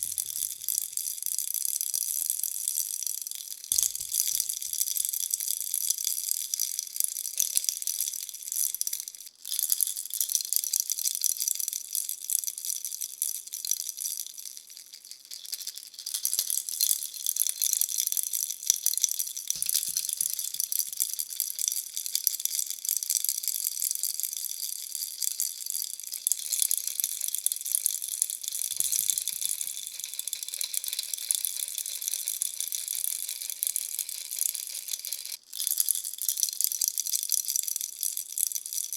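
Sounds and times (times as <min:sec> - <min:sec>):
plastic baby rattle shaken: 0:00.0 - 0:01.3, 0:03.5 - 0:06.4, 0:13.4 - 0:38.9.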